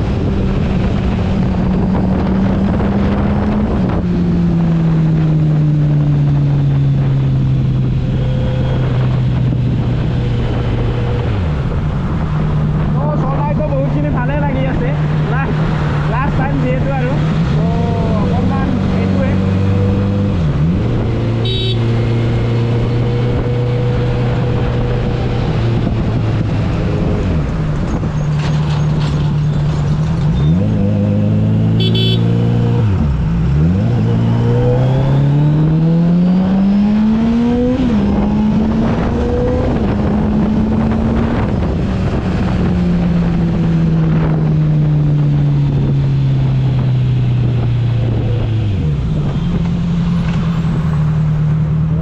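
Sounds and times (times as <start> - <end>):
motorcycle engine running: 31.8 - 32.2.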